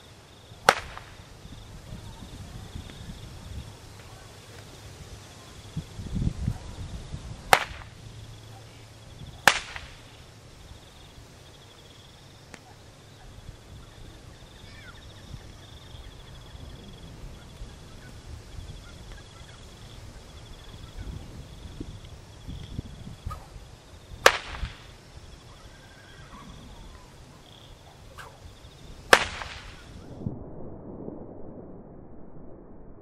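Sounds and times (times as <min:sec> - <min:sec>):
whip cracks: 0:00.6 - 0:01.3, 0:07.5 - 0:08.0, 0:09.4 - 0:10.2, 0:24.2 - 0:25.0, 0:29.1 - 0:30.0.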